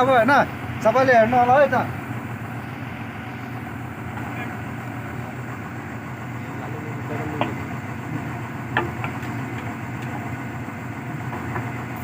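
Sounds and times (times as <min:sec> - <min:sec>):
diesel engine running under load: 0:00.0 - 0:12.0
sharp knocks: 0:08.7 - 0:09.7.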